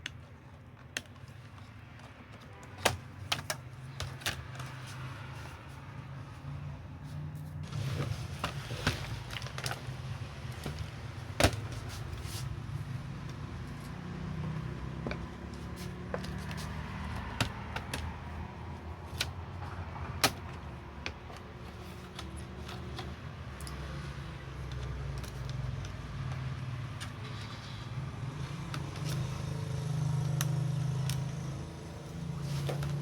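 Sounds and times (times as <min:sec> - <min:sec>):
tools and plastic parts clicking: 0:00.0 - 0:05.0, 0:14.4 - 0:27.8, 0:28.4 - 0:33.0.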